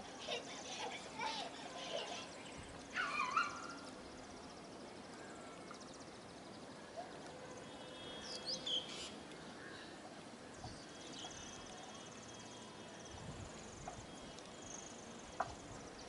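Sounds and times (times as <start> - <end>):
insects trilling: 0.0 - 6.6
birds chirping: 0.1 - 13.2.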